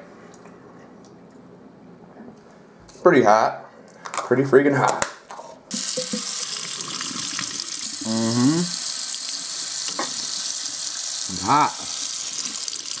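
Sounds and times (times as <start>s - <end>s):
man groaning: 8.0s - 8.8s, 11.3s - 12.0s.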